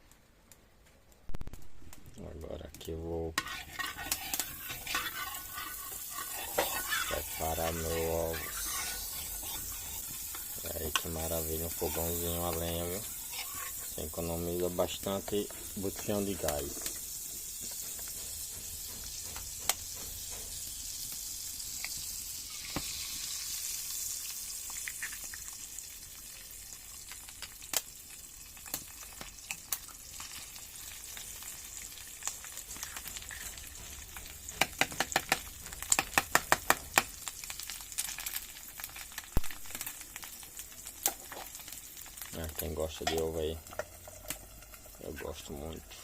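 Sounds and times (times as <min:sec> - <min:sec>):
eggs sizzling in a pan: 0:01.8 - 0:46.0.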